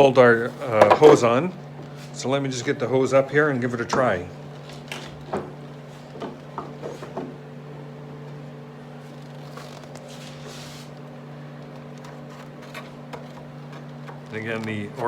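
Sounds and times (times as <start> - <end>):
steady low hum: 0.0 - 15.0
scraping rustle: 9.0 - 11.0.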